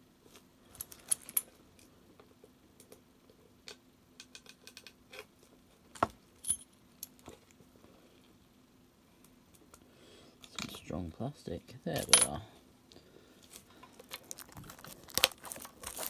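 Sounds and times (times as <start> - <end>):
fingers picking plastic wrapping: 14.0 - 16.0.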